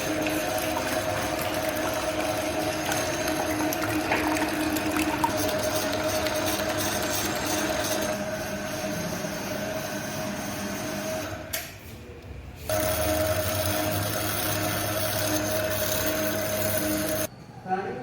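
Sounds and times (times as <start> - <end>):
small electric motor humming: 12.7 - 17.3.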